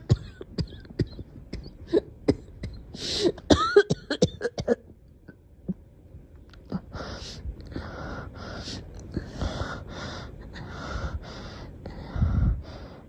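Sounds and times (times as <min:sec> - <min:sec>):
girl coughing: 0:00.0 - 0:04.9.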